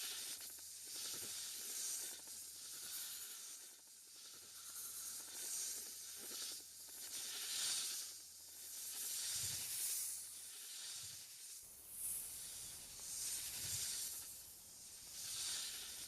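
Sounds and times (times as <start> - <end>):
snake hissing: 0.1 - 16.0.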